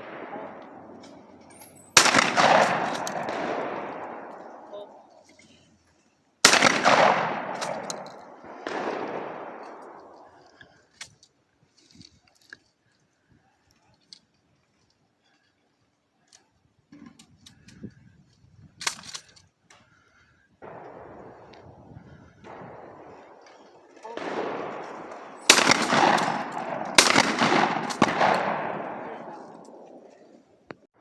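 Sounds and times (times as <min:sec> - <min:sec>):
shotgun firing: 0:00.0 - 0:01.3, 0:01.9 - 0:04.8, 0:06.4 - 0:10.2, 0:20.6 - 0:30.1.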